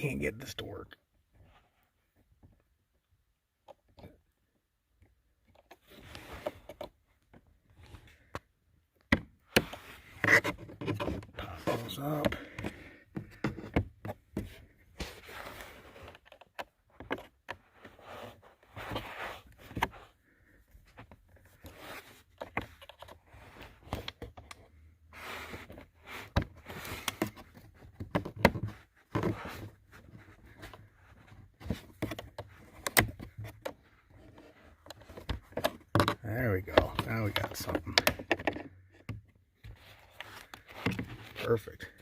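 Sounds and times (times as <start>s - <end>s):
plastic rubbing: 9.5s - 42.0s.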